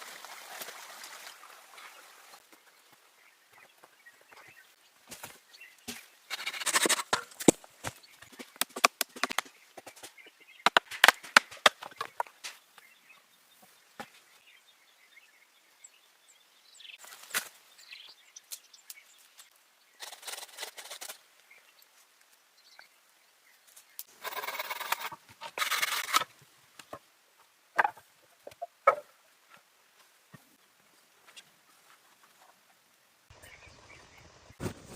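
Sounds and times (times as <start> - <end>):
branches and foliage rustling: 0.0 - 14.7, 16.0 - 34.9
wood knocking and clicking: 27.8 - 29.1.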